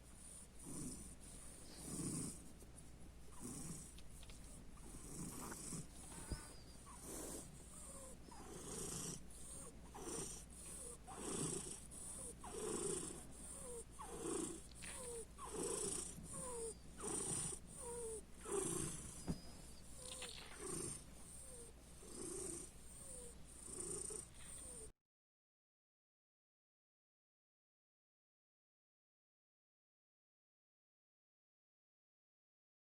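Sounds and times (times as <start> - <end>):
cat purring rasping breath: 0.0 - 24.9.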